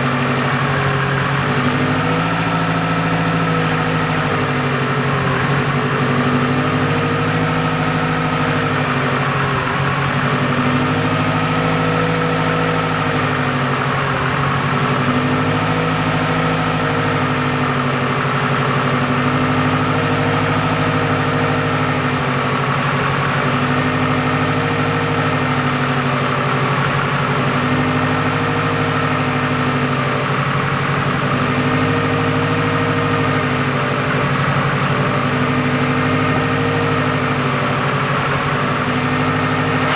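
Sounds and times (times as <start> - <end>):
car engine idling: 0.0 - 39.9.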